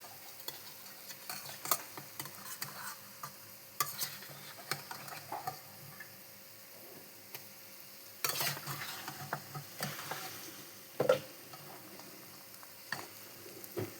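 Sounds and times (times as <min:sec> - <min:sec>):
spoon scraping a pan: 0:00.0 - 0:06.1, 0:08.2 - 0:13.8
faint sizzle: 0:00.0 - 0:13.9.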